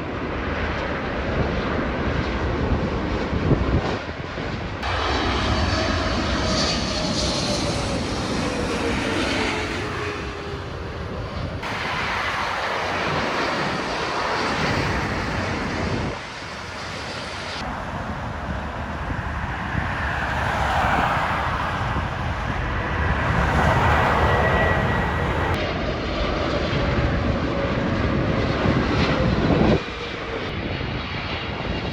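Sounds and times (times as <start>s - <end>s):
jet airliner engines: 0.0s - 31.9s
falling engine whine: 4.8s - 25.6s.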